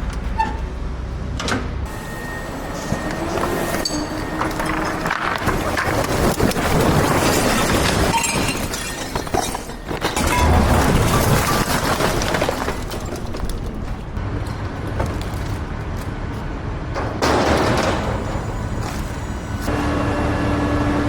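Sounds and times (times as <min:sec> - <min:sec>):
debris crashing and clattering: 0:01.9 - 0:16.1, 0:17.1 - 0:19.5.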